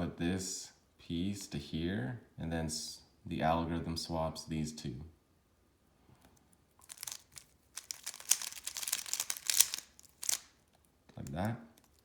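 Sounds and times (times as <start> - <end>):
plastic puzzle cube clicking: 6.8 - 10.5.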